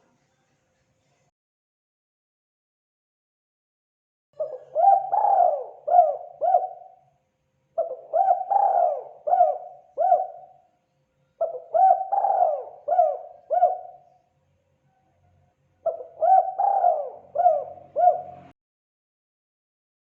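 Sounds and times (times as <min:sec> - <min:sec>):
dove cooing: 0:04.4 - 0:07.0, 0:07.8 - 0:10.6, 0:11.4 - 0:14.1, 0:15.8 - 0:18.5.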